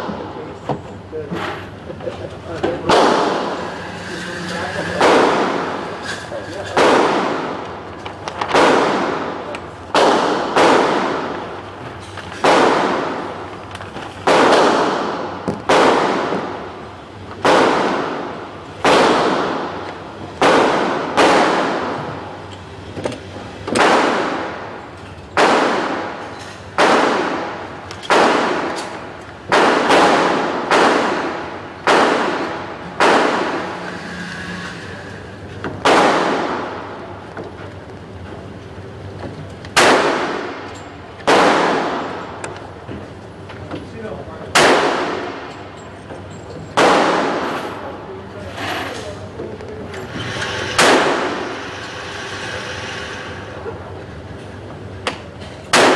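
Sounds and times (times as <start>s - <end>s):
pistol shots with echo: 2.8s - 3.7s, 5.0s - 6.0s, 6.7s - 7.6s, 8.5s - 11.6s, 12.4s - 13.4s, 14.2s - 16.7s, 17.4s - 19.8s, 20.4s - 22.3s, 23.7s - 24.8s, 25.4s - 33.8s, 35.8s - 37.0s, 39.8s - 42.4s, 44.5s - 45.6s, 46.8s - 47.9s, 50.8s - 51.5s.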